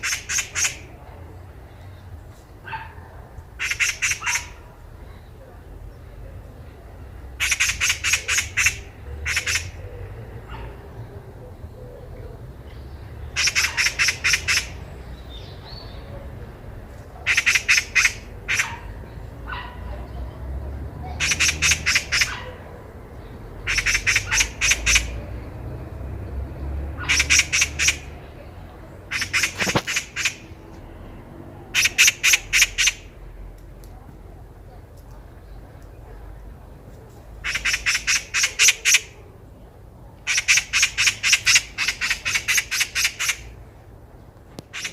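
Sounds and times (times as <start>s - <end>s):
magpie chattering: 0.0s - 0.9s, 3.6s - 4.7s, 7.3s - 10.6s, 13.2s - 15.8s, 17.2s - 19.2s, 21.2s - 25.3s, 27.0s - 28.3s, 28.9s - 30.6s, 31.7s - 33.2s, 37.4s - 39.2s, 40.2s - 43.6s, 44.6s - 44.9s.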